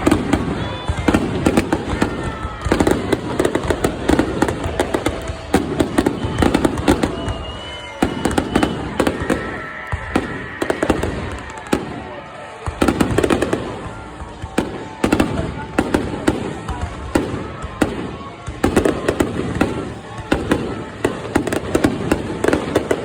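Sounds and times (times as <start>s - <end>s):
fireworks booming and crackling: 0.0s - 23.0s.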